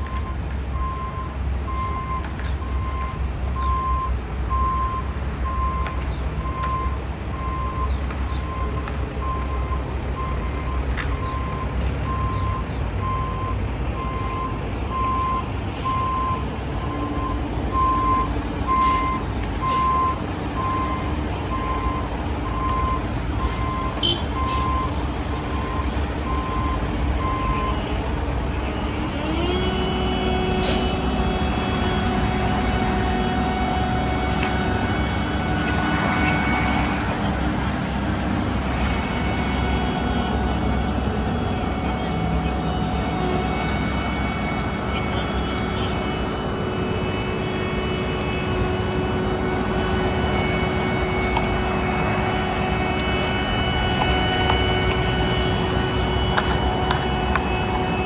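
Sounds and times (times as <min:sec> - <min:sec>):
diesel construction machinery running: 0:00.0 - 0:58.0
reversing alarm beeping: 0:00.0 - 0:58.0
engine revving: 0:20.7 - 0:58.0.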